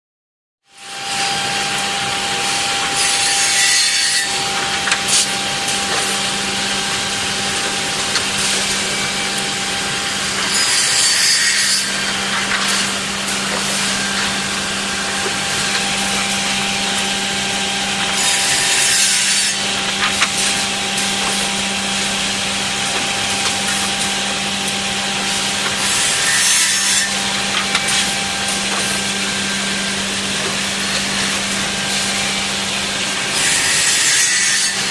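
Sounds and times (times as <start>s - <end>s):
machine cutting through wood: 0.8s - 34.9s
machine motors humming: 1.0s - 33.8s.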